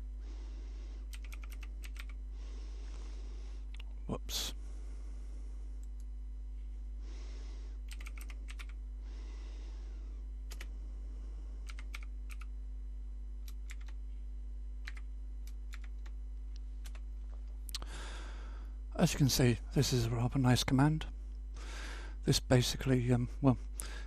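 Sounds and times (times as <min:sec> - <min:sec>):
low electrical hum: 0:00.0 - 0:24.0
clicky keyboard keystrokes: 0:01.1 - 0:02.2, 0:07.9 - 0:08.8, 0:11.7 - 0:12.5, 0:13.5 - 0:14.0, 0:14.9 - 0:16.1.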